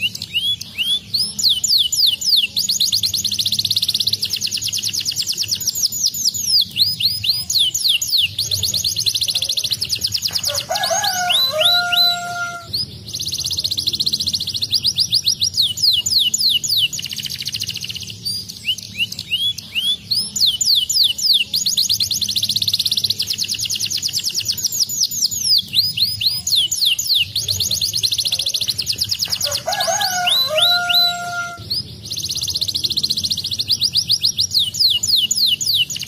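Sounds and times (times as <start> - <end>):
canary singing trills: 0.0 - 36.0.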